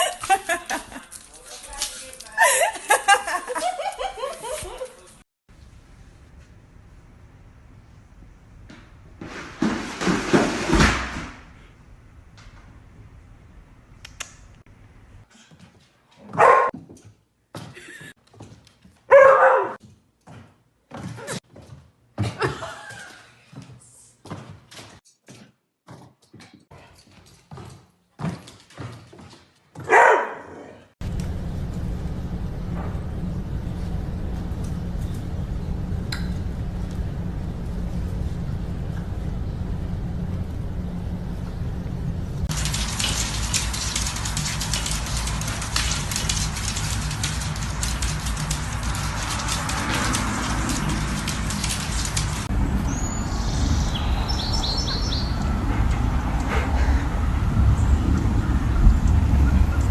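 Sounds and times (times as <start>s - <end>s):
dog barking: 16.3s - 16.7s, 19.1s - 19.8s, 29.8s - 30.8s
steady low rumble: 31.0s - 59.9s
bird chirping: 52.8s - 55.5s.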